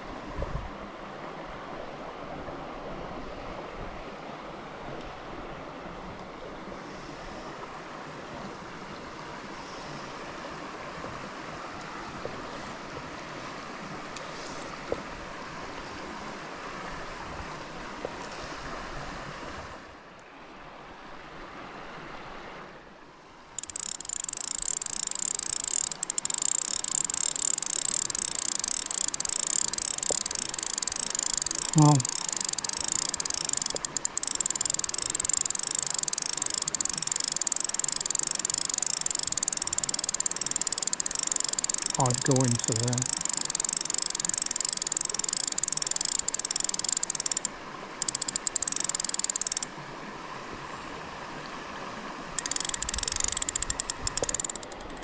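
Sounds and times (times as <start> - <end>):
river water running: 0.0 - 55.0.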